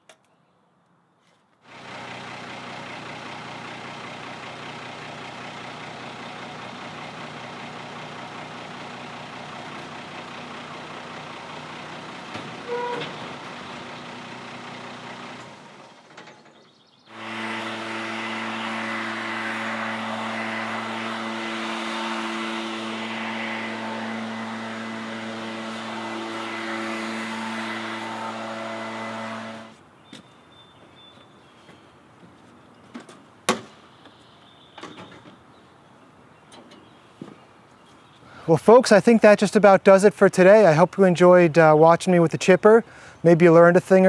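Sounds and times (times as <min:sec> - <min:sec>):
diesel engine running: 0:01.7 - 0:16.5, 0:17.1 - 0:32.7, 0:41.8 - 0:44.0.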